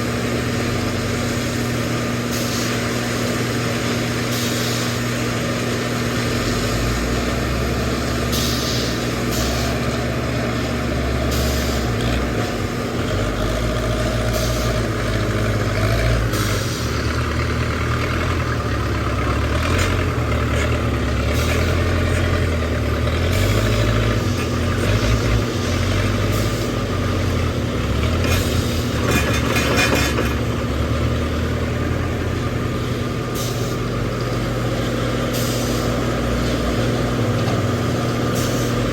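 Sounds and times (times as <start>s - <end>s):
diesel engine under load: 0.0s - 38.9s
hydraulic hiss and clatter: 2.2s - 3.3s, 4.1s - 5.2s, 8.3s - 9.9s, 11.2s - 12.6s, 14.2s - 15.0s, 16.2s - 17.2s, 23.3s - 26.9s, 28.1s - 30.4s, 33.3s - 33.9s, 35.3s - 36.6s, 37.4s - 38.9s.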